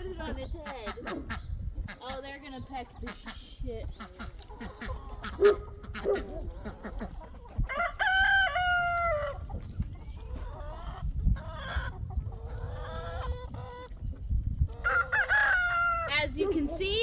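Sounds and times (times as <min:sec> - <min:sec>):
chickens clucking: 0:00.0 - 0:17.0
rooster crowing: 0:07.7 - 0:09.4, 0:14.9 - 0:16.1.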